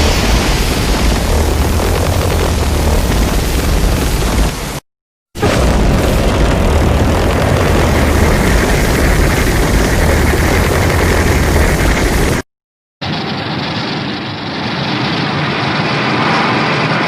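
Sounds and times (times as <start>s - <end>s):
monster rumbling: 0.0s - 4.8s, 5.4s - 12.4s.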